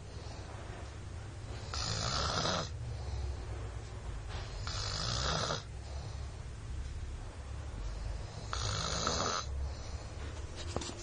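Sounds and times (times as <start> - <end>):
person snoring loudly: 1.7 - 2.7, 4.6 - 5.7, 8.5 - 9.5.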